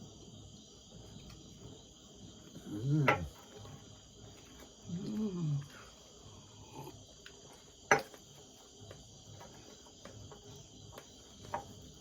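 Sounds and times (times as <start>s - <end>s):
crickets chirping: 0.0s - 12.0s.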